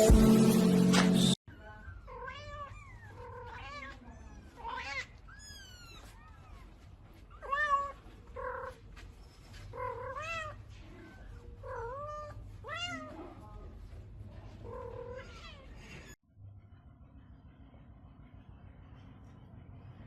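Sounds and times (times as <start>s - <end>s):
cat meowing: 1.9s - 6.7s, 7.3s - 8.8s, 9.7s - 13.2s, 14.6s - 16.2s.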